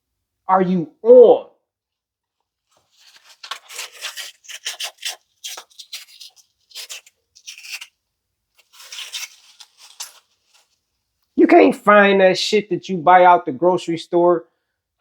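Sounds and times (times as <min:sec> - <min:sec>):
rasping scraping on watermelon: 0:03.3 - 0:07.9.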